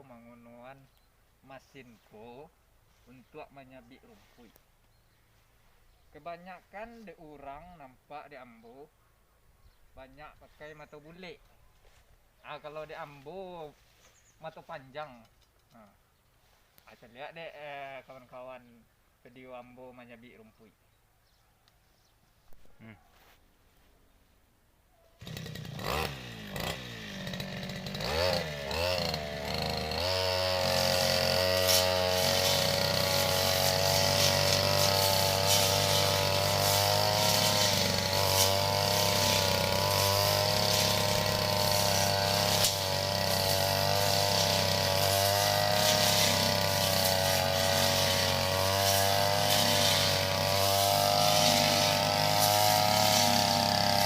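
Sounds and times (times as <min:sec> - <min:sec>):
brush cutter engine revving: 0:25.2 - 0:54.0.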